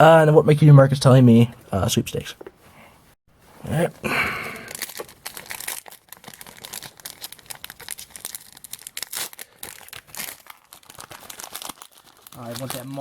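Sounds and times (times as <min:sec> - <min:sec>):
plastic wrapper crinkling and tearing: 0:04.5 - 0:13.0.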